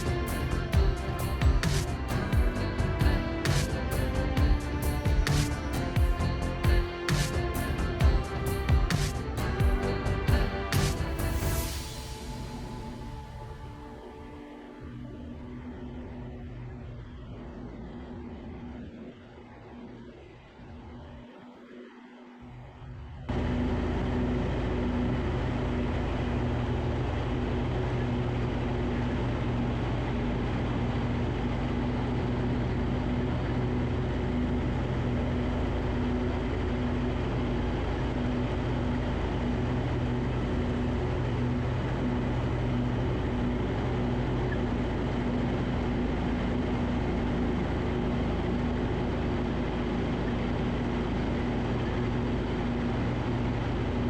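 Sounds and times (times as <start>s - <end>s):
lawn tractor engine mowing: 23.3s - 54.0s.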